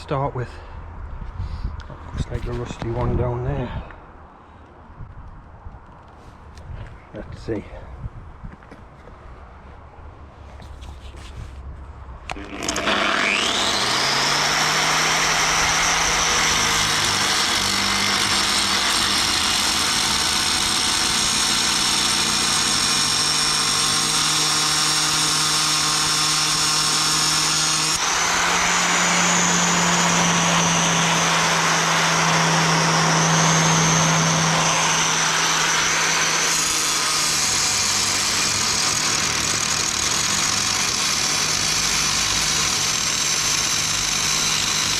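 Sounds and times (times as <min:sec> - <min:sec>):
angle grinder cutting metal: 0:12.3 - 0:44.9.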